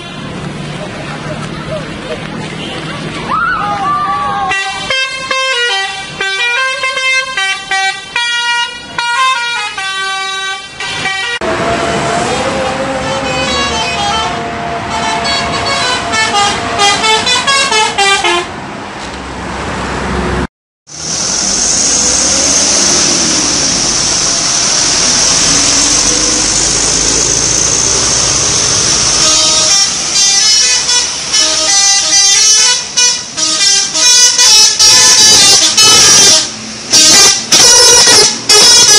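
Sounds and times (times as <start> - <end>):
air horns playing melody: 4.5 - 18.6, 28.6 - 38.9.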